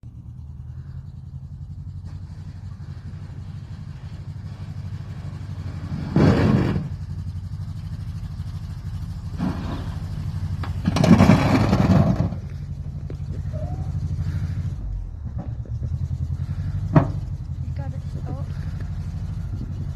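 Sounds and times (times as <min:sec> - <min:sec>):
van engine running: 0:00.0 - 0:19.9
van body scraping through snow: 0:02.0 - 0:07.2, 0:08.6 - 0:19.9.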